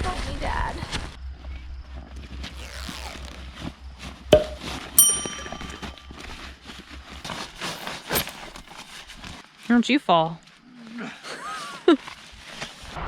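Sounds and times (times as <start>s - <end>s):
sharp knocks: 4.4s - 6.0s
bright metallic clink: 4.4s - 6.2s
rustling handling sounds: 7.6s - 8.8s.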